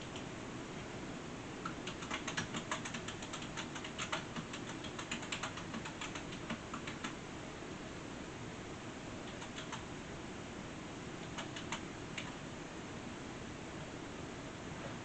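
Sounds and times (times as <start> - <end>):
steady low hiss: 0.0 - 15.0
typing on a keyboard: 1.6 - 7.2, 9.2 - 9.9, 11.2 - 12.4.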